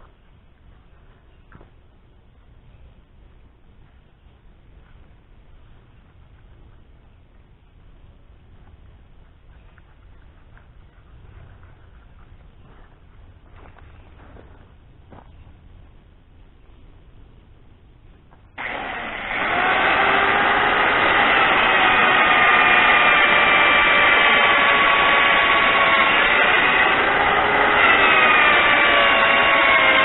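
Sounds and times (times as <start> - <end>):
motor whining: 18.6 - 30.0.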